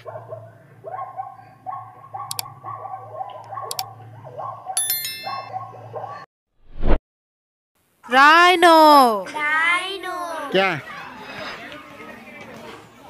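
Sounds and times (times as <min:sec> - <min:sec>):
zebra yapping barks: 0:00.0 - 0:04.8
high ding: 0:04.8 - 0:05.6.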